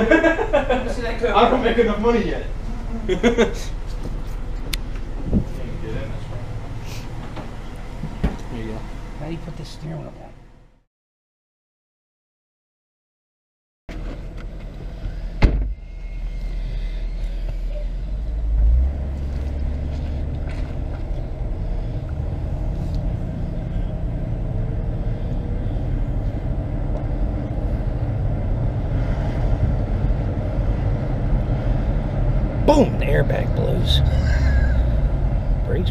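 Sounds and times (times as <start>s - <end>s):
car engine rumbling from inside: 0.0s - 10.8s, 13.9s - 35.9s
sharp thump: 7.2s - 8.5s, 15.4s - 15.8s.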